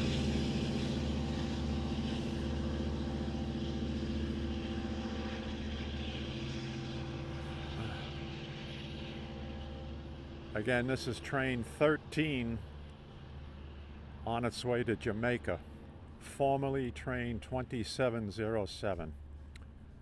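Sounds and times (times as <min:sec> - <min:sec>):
diesel locomotive engine running: 0:00.0 - 0:20.0.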